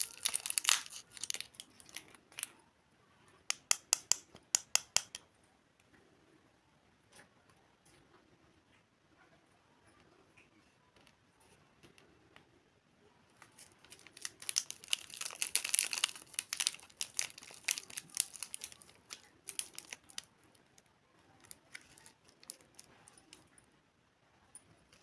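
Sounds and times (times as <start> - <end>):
snack wrapper crinkling and tearing: 0.0 - 2.6, 13.4 - 23.5.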